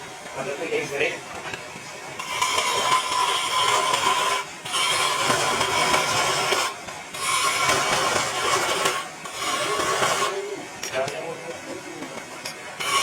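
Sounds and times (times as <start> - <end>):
tool stroking against wood: 2.2 - 10.4, 12.8 - 13.0.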